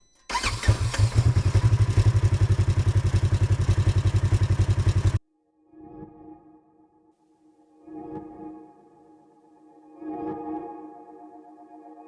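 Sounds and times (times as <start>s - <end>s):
engine clatter: 0.3s - 5.2s
engine running: 0.3s - 5.2s.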